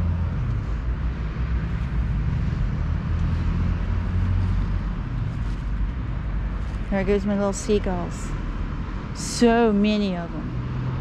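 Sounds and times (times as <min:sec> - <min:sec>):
car engine running: 0:00.0 - 0:08.0.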